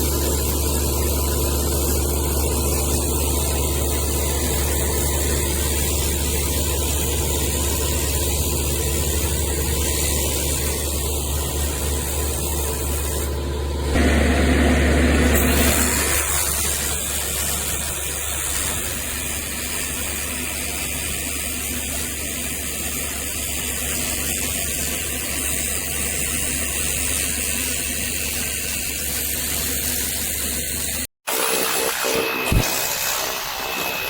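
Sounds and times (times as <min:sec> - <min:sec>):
pressure washer spraying water: 0:00.0 - 0:34.0
pump humming: 0:10.4 - 0:17.4.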